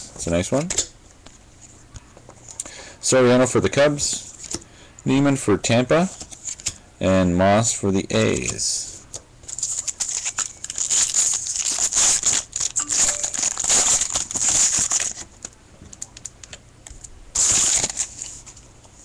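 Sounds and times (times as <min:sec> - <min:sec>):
foil wrapper crinkling and tearing: 0:09.4 - 0:18.5.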